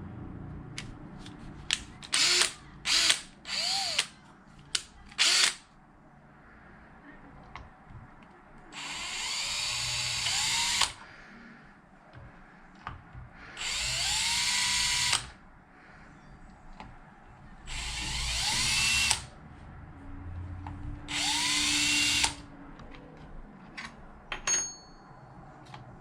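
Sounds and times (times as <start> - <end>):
power drill whining: 2.2 - 4.0, 5.2 - 5.6, 8.8 - 11.0, 13.6 - 15.3, 17.7 - 19.3, 21.1 - 22.4.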